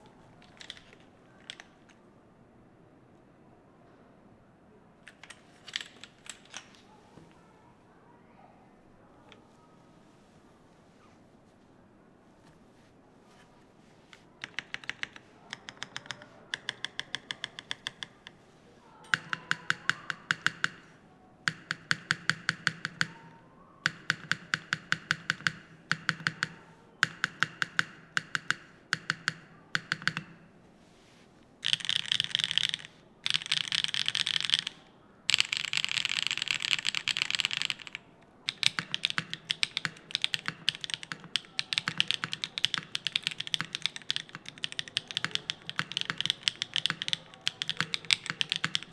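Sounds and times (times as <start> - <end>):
mechanical keyboard typing: 0.0 - 2.0, 5.0 - 6.8, 14.1 - 30.6, 31.6 - 48.9.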